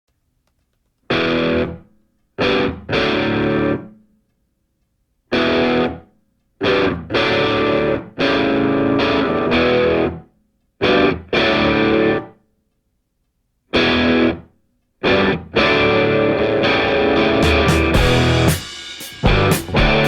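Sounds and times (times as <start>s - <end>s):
distorted electric guitar chords: 1.1s - 1.8s, 2.4s - 3.9s, 5.3s - 6.0s, 6.6s - 10.2s, 10.8s - 12.3s, 13.8s - 14.4s, 15.0s - 20.0s.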